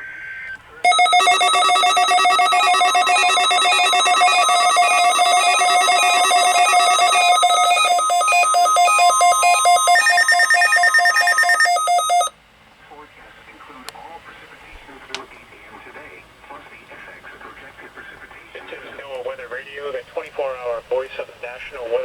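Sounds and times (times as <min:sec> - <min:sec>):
rapid electronic alarm trill: 0:00.9 - 0:12.3.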